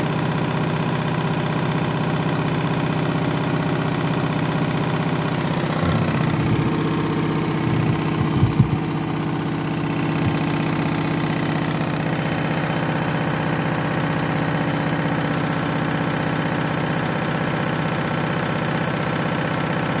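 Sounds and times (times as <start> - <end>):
washing machine spinning: 1.6 - 17.5.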